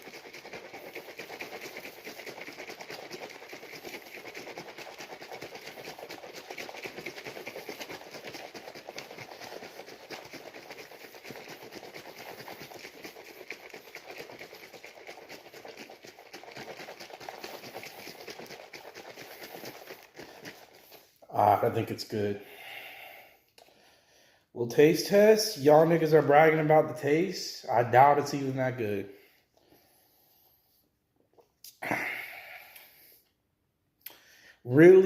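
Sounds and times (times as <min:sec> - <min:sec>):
shaker cup sloshing and clattering: 0:00.0 - 0:22.2.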